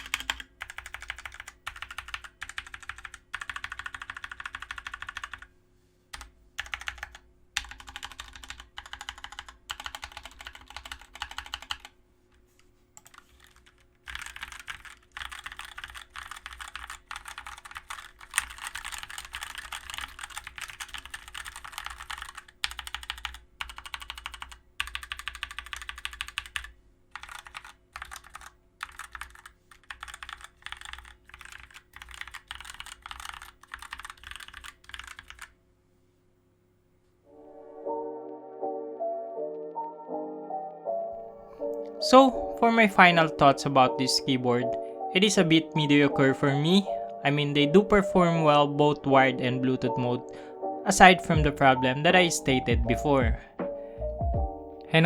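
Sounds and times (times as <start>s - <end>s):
fast typing on mechanical keyboard: 0.0s - 5.5s, 6.1s - 11.9s, 13.0s - 35.6s.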